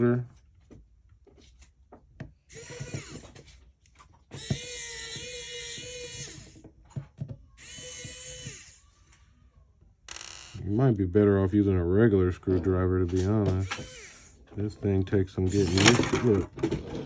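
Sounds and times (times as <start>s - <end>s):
electric screwdriver motor whirring: 2.5s - 3.3s, 4.4s - 6.6s, 7.6s - 8.8s, 13.6s - 14.4s.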